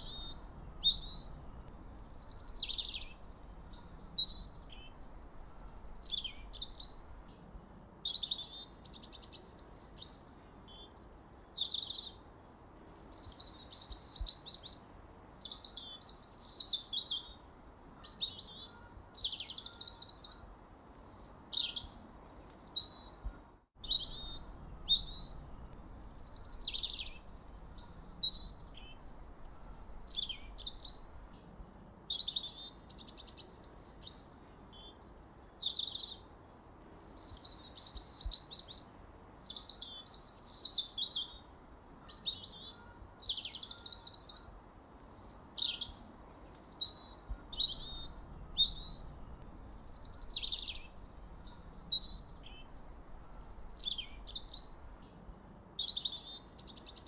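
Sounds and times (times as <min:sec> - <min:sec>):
faint background hiss: 0:00.0 - 0:57.0
songbirds singing: 0:00.0 - 0:57.0.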